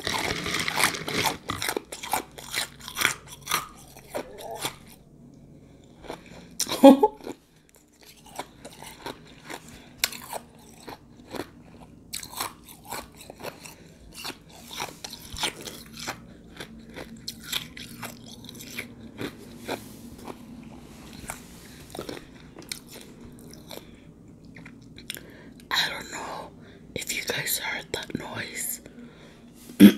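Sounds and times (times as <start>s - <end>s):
chewing crushed ice: 0.0s - 5.0s, 5.8s - 26.0s.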